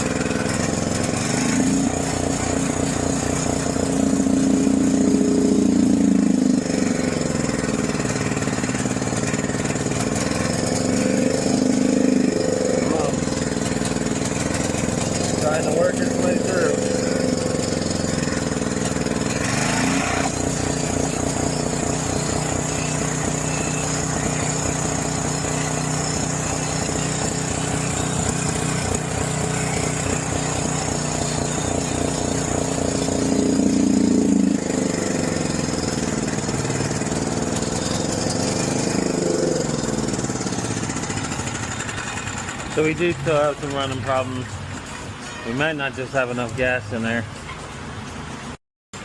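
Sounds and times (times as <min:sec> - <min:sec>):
generator engine running rough: 0:00.0 - 0:49.0.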